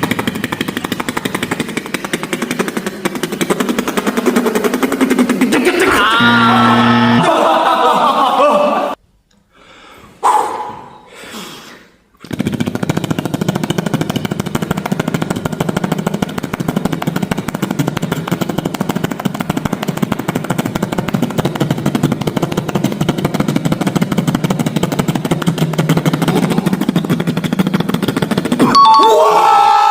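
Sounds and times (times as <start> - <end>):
beatboxed helicopter imitation: 0.0 - 7.3, 12.2 - 28.8.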